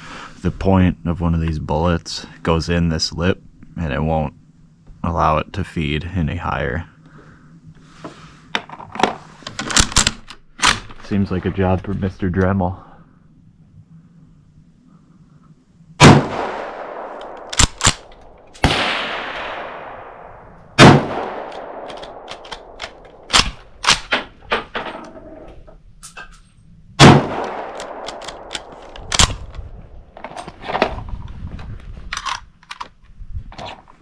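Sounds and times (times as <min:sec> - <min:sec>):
rifle shots echoing: 0:16.0 - 0:24.2, 0:27.0 - 0:29.5
quieter bang: 0:16.0 - 0:25.0, 0:27.0 - 0:29.6
rifle bolt clacking: 0:17.2 - 0:18.8, 0:21.2 - 0:24.3, 0:27.4 - 0:29.6.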